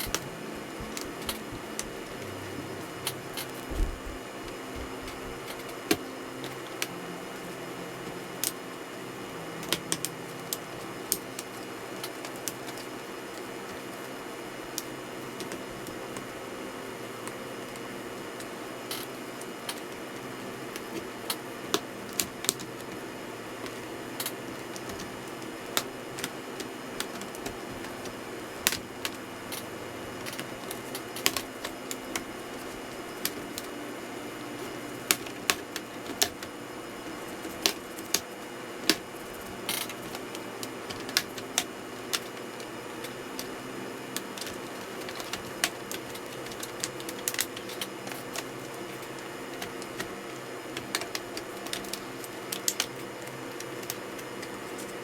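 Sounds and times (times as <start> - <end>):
steady low hum: 0.0 - 55.0
small hard objects clicking: 50.8 - 53.0.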